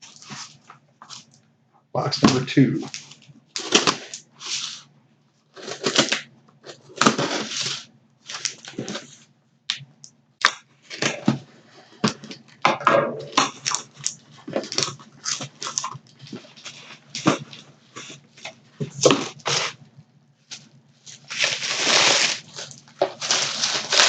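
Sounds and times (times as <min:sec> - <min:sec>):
packing crumpling and rustling: 0:02.1 - 0:04.8, 0:05.6 - 0:09.2, 0:13.3 - 0:19.8, 0:20.4 - 0:24.0
cardboard box tearing: 0:03.6 - 0:04.8, 0:05.6 - 0:09.1, 0:21.2 - 0:24.0.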